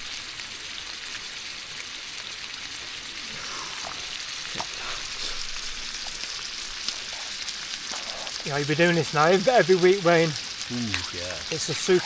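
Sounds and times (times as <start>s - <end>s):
food sizzling in a frying pan: 0.0s - 12.0s.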